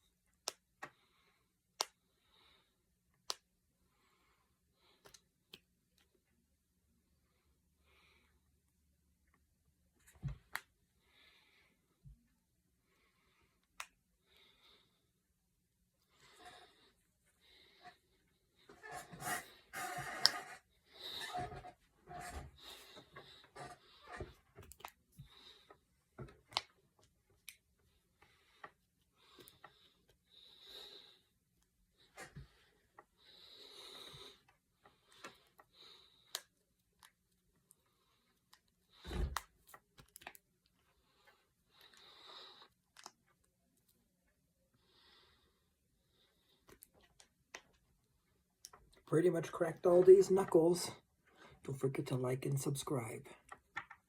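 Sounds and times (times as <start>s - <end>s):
knuckles cracking: 1.8s - 2.0s, 3.1s - 3.5s
soft breathing: 44.6s - 47.4s.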